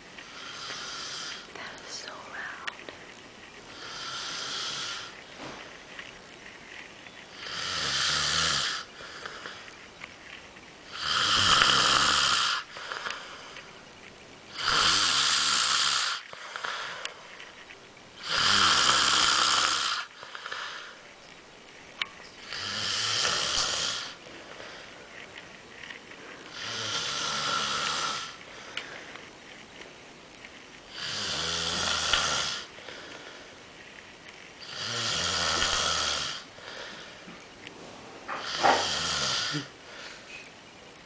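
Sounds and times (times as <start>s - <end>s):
quiet breathing: 0.0s - 41.0s
loud snoring: 0.2s - 1.5s, 3.7s - 5.2s, 7.3s - 9.5s, 10.9s - 13.2s, 14.5s - 17.0s, 18.2s - 20.9s, 22.4s - 24.2s, 26.5s - 28.4s, 30.9s - 32.7s, 34.6s - 36.9s, 38.3s - 39.7s.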